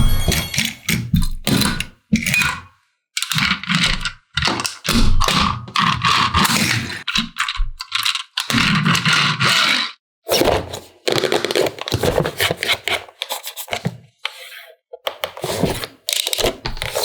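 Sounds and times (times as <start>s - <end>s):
plastic parts clicking and clattering: 3.2s - 9.9s, 15.0s - 17.0s.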